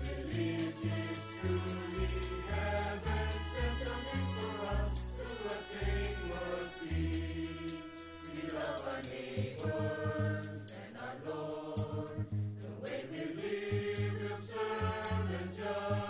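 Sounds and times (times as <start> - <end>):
bass line: 0.0 - 8.8, 11.8 - 12.8
group of voices singing: 0.0 - 16.0.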